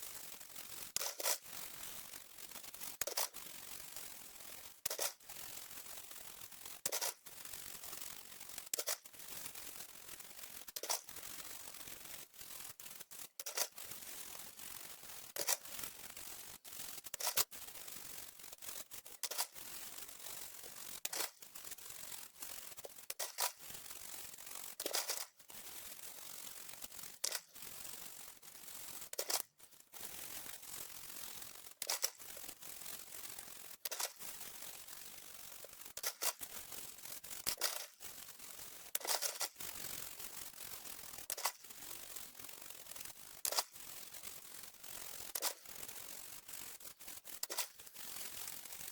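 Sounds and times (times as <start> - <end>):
sharp plastic clicks: 24.8 - 25.3, 29.1 - 29.4, 31.8 - 32.2, 33.8 - 34.3, 43.4 - 43.7.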